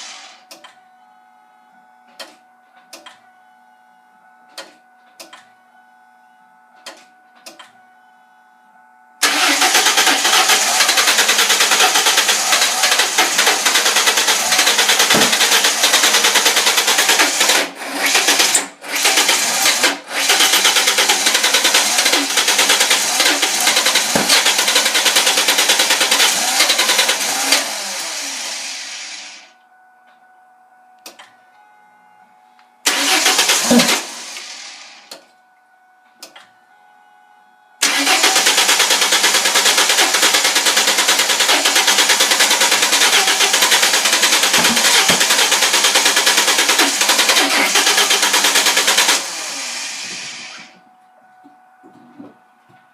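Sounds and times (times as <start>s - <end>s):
engine cranking without starting: 9.2s - 29.2s, 32.9s - 35.0s, 37.8s - 50.7s.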